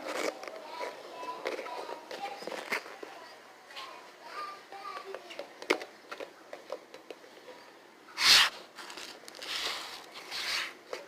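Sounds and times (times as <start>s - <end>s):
rustling: 7.3s - 11.0s.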